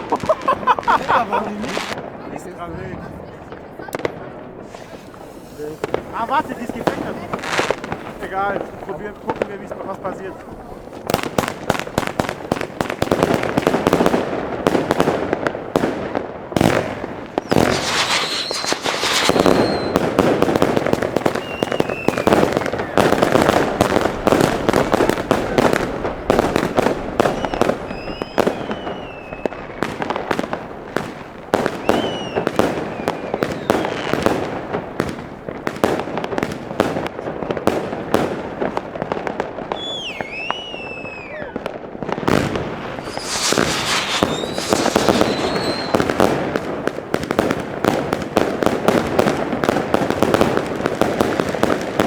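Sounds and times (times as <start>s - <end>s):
firework shots and crackling bangs: 0.0s - 52.0s
firework whistles: 4.6s - 8.3s, 17.3s - 23.4s, 27.2s - 29.8s, 31.6s - 34.2s, 39.7s - 41.7s, 42.3s - 46.6s.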